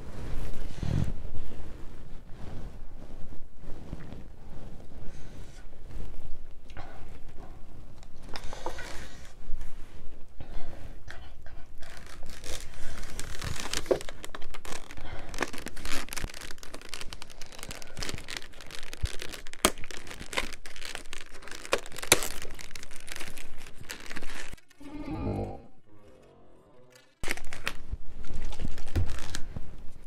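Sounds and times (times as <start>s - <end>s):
rubbing on microphone: 0.0s - 6.6s
belly crackling and clicking: 11.1s - 24.8s.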